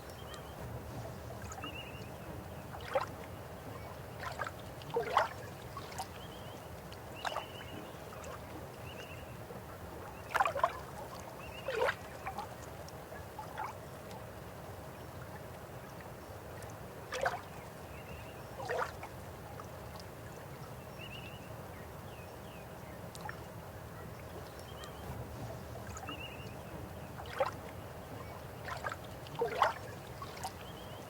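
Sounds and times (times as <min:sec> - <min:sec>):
water gurgles and plops: 0:04.2 - 0:06.3, 0:24.7 - 0:30.9.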